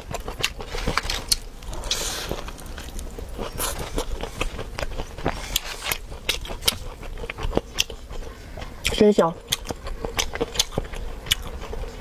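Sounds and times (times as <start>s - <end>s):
person chewing with wet smacks: 0.0s - 12.0s.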